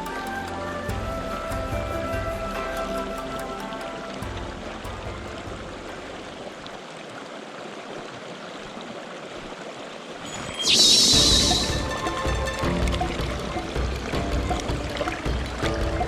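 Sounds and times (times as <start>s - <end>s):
stream water running: 0.0s - 16.0s
loud high-pitched noise: 10.2s - 12.5s.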